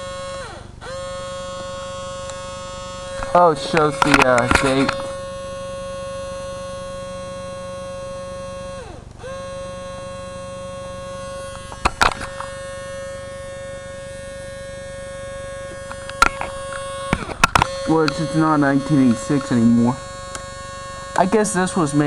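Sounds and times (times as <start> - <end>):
high electrical buzz: 0.0 - 22.0
sharp clicks: 3.1 - 5.2, 20.2 - 20.5.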